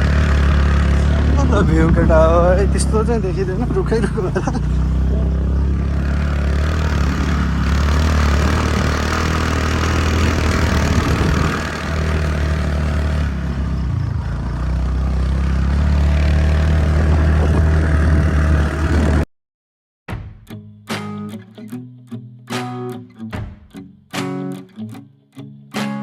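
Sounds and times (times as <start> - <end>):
motor scooter engine running: 0.0 - 19.2.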